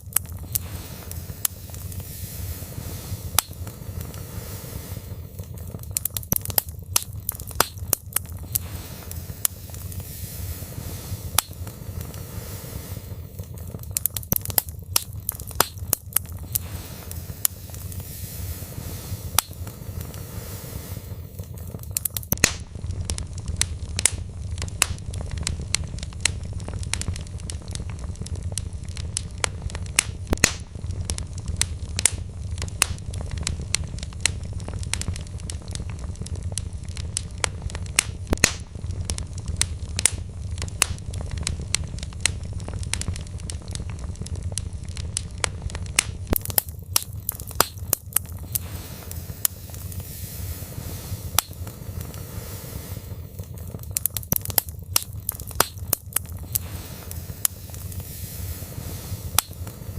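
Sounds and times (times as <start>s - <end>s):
faint hiss: 0.0s - 22.4s, 46.3s - 59.9s
low rumble of flames: 0.0s - 59.9s
wood fire crackling and popping: 0.0s - 59.9s.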